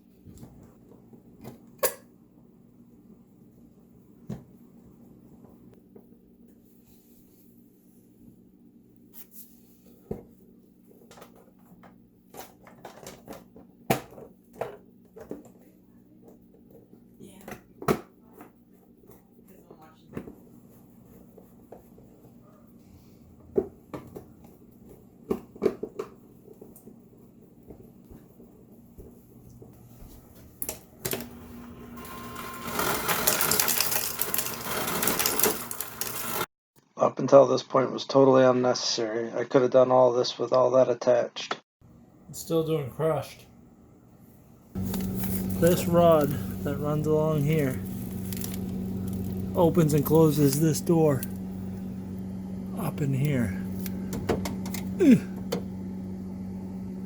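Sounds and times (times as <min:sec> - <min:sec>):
ice dispenser clicks: 0:32.0 - 0:36.4
ice clattering: 0:32.0 - 0:36.5, 0:44.8 - 0:51.4
steady low hum: 0:42.3 - 0:57.0.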